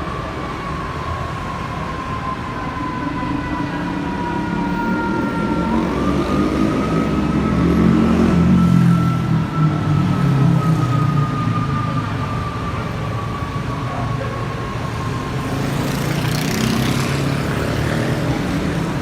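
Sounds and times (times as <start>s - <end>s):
passing vehicles rushing: 0.0s - 19.0s
vehicle engines running: 5.0s - 19.0s.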